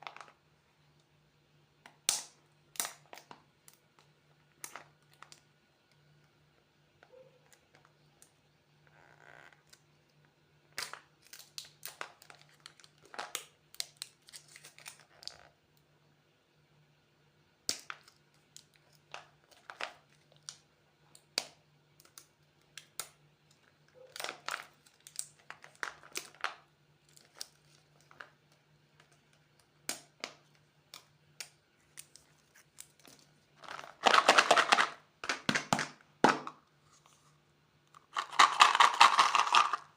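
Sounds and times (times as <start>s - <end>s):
plastic packaging crinkling and tearing: 13.8s - 15.3s.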